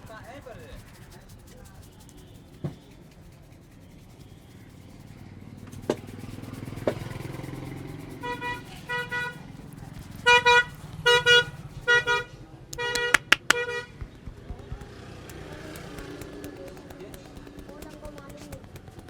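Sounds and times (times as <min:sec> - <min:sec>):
passing traffic rumble: 0:00.0 - 0:19.0
vehicle horn toots: 0:08.2 - 0:09.4, 0:10.2 - 0:14.0
sharp clicks: 0:12.7 - 0:19.0.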